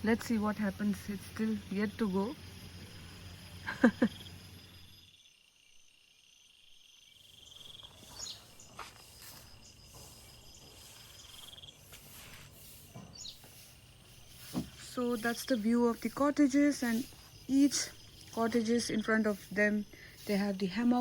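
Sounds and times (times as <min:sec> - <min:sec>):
crickets trilling: 0:00.0 - 0:21.0.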